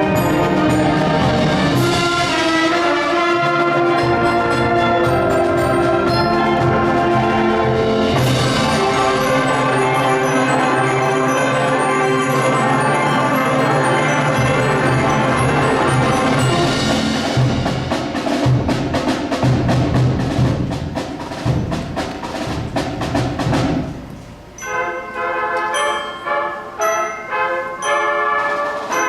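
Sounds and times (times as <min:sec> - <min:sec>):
concert band playing: 0:00.0 - 0:29.0
ringing bells: 0:04.1 - 0:17.7, 0:24.6 - 0:29.0.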